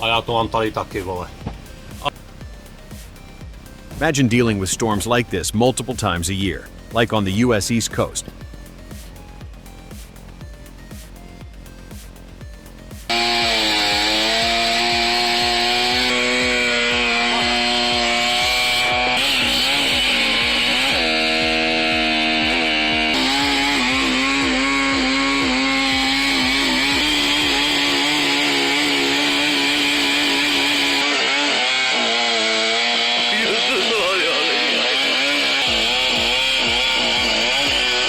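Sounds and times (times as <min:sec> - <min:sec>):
chainsaw running at high revs: 0:08.0 - 0:38.0.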